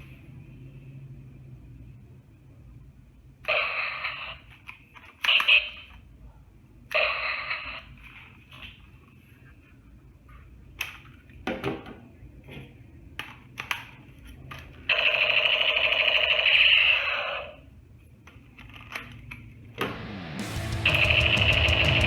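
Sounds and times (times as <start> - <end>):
electronic toy gun sound effect: 14.9 - 17.5
loud sound: 19.8 - 22.0.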